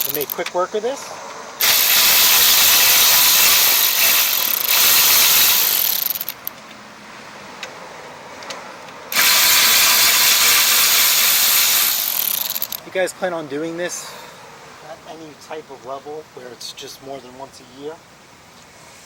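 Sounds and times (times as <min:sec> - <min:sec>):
cordless power tool spinning: 0:00.0 - 0:00.4, 0:01.6 - 0:06.5, 0:09.1 - 0:12.8.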